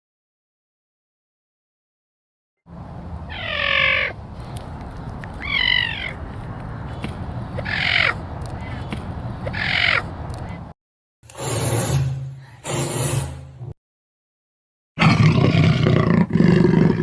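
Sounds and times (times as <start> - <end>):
harsh crow-like animal calls: 3.3 - 4.2, 5.4 - 6.2, 7.6 - 8.8, 9.4 - 10.1.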